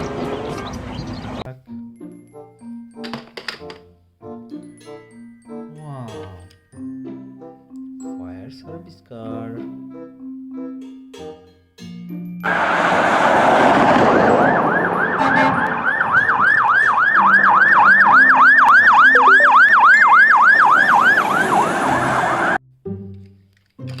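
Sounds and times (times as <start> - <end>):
toy electronic siren yelping: 14.3 - 22.6.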